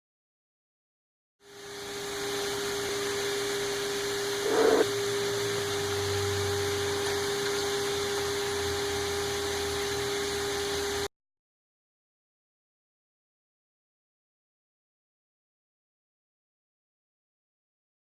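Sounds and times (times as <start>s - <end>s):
workshop machine humming: 1.4s - 11.1s.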